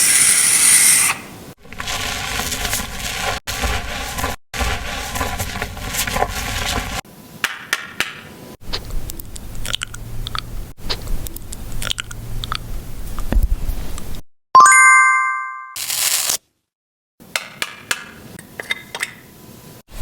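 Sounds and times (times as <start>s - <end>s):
rustling of skincare products: 1.6s - 7.0s
bright metallic ding ringing: 14.6s - 15.8s.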